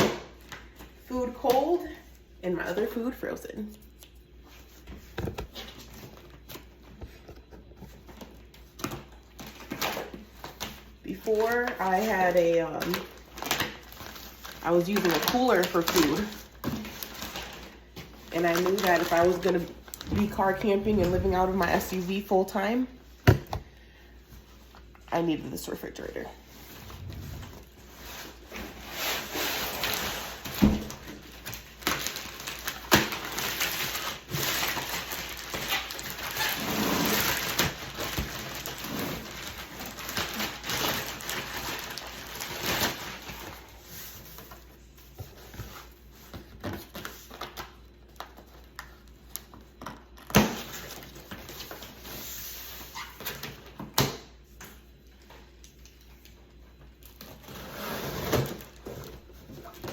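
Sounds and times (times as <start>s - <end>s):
packaging rustling and scraping: 4.5s - 22.4s, 26.5s - 49.6s.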